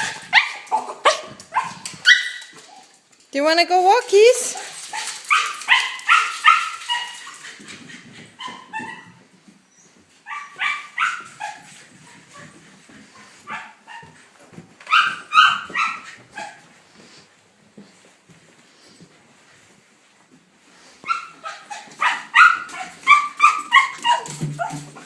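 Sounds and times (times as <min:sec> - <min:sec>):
dog barking and yipping: 0:00.0 - 0:03.0, 0:04.5 - 0:07.6, 0:08.3 - 0:09.2, 0:10.3 - 0:12.6, 0:13.2 - 0:14.2, 0:14.8 - 0:16.7, 0:21.0 - 0:25.0.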